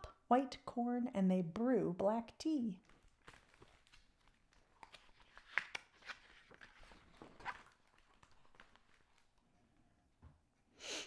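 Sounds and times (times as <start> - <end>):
paper book page turning: 2.8 - 9.4.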